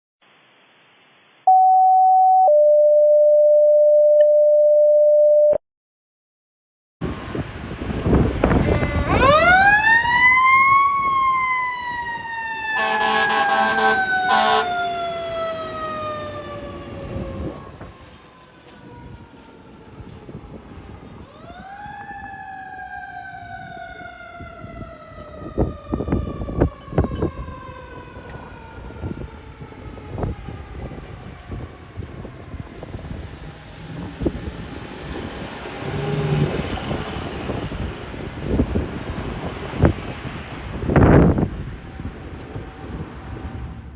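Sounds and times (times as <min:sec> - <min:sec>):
truck engine rumbling: 0:07.0 - 0:21.0, 0:30.7 - 0:43.9
fire truck siren winding: 0:08.4 - 0:33.3
air horn blasts: 0:12.7 - 0:14.9.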